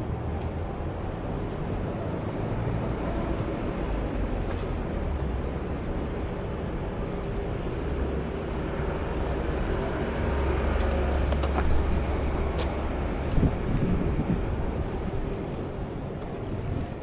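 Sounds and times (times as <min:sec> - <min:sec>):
passing vehicles rumble: 0:00.0 - 0:17.0.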